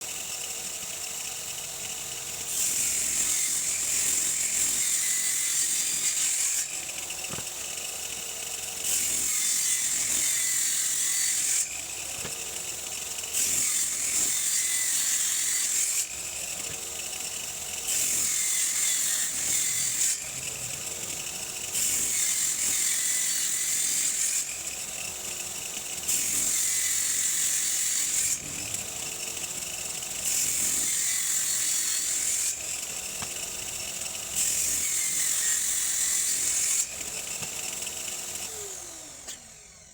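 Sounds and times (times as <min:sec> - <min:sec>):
power saw cutting wood: 0:00.0 - 0:39.9.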